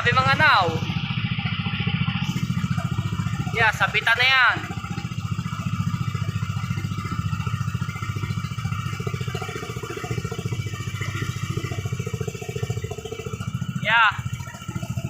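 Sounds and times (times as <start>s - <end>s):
boat engine chugging: 0.0s - 15.0s.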